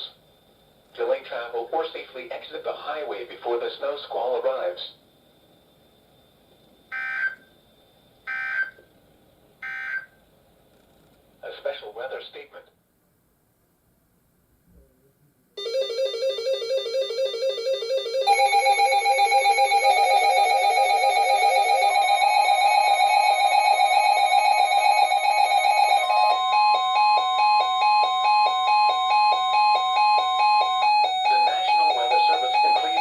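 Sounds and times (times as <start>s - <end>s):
buzzy synthesized electronic music: 31.2s - 33.0s.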